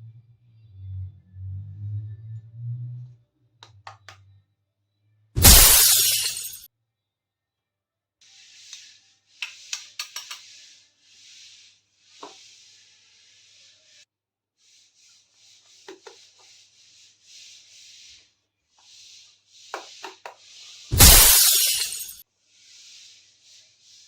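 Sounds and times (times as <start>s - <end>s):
faint rustling and rubbing: 8.2s - 20.9s, 22.2s - 24.0s.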